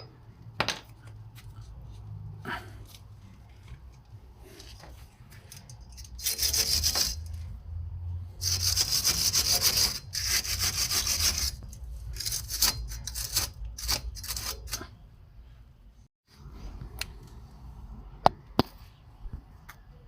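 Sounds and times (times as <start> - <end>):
hand scraping strokes: 2.8 - 7.6, 8.3 - 14.8.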